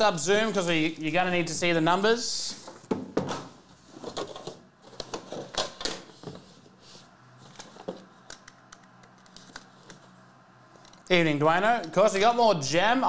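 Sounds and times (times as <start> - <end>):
cards and packaging handled: 3.8 - 10.2.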